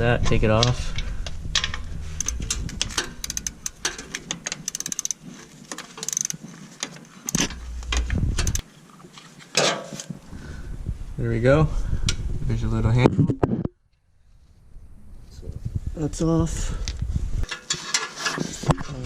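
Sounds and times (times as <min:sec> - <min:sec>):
ratchet wrench clicking: 0:01.6 - 0:05.2, 0:06.0 - 0:06.4, 0:07.3 - 0:08.6
metal clicks and taps: 0:01.6 - 0:08.6.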